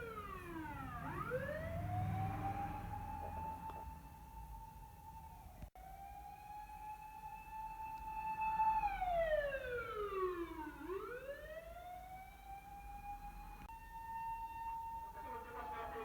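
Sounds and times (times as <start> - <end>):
low traffic rumble: 0.0 - 5.7
emergency vehicle siren wailing: 0.0 - 16.0.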